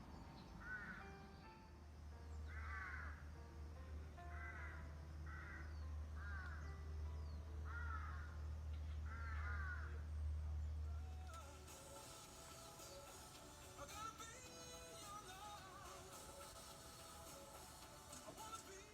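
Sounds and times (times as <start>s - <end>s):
faint background music: 0.0s - 18.9s
crow cawing: 0.6s - 1.0s, 2.5s - 3.2s, 4.3s - 6.7s, 7.7s - 8.4s, 9.0s - 10.0s.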